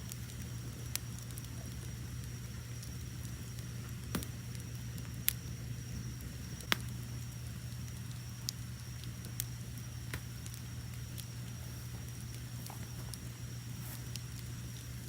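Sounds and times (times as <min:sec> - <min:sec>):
fire burning with crackles: 0:00.0 - 0:15.0
crickets chirping: 0:07.1 - 0:15.0.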